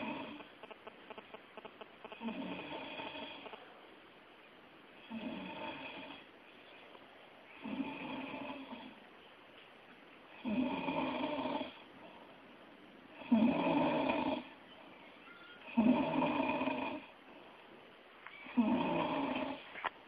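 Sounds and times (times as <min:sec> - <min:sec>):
person snoring: 0:00.0 - 0:00.4, 0:02.1 - 0:03.6, 0:05.0 - 0:06.3, 0:07.6 - 0:09.0, 0:10.4 - 0:11.8, 0:13.2 - 0:14.5, 0:15.7 - 0:17.1, 0:18.5 - 0:19.7
quiet breathing: 0:00.0 - 0:04.0, 0:10.3 - 0:19.9.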